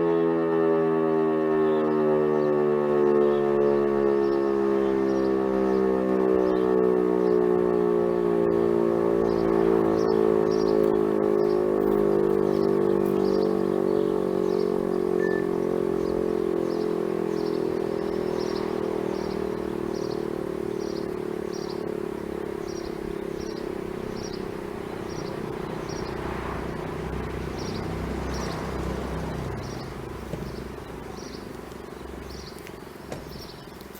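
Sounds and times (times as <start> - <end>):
electric motor siren winding down: 0.0 - 33.9
vehicle passing: 3.6 - 33.9
small bird chirping: 9.3 - 33.9.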